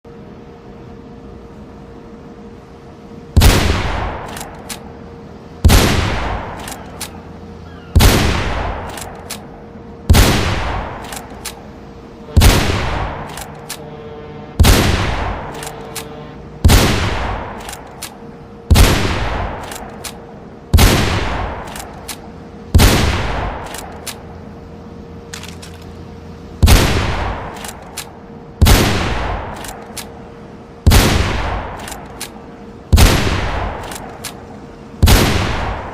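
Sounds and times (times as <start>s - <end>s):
faint steady hum: 0.0s - 35.9s
rifle shots echoing: 5.6s - 6.8s, 8.0s - 9.2s, 10.1s - 11.3s, 12.3s - 13.5s, 14.6s - 15.8s, 16.6s - 17.8s, 18.7s - 20.1s, 20.7s - 22.0s, 22.7s - 24.0s, 26.6s - 27.8s, 28.6s - 29.9s, 30.8s - 32.2s, 32.9s - 34.3s, 35.0s - 35.9s.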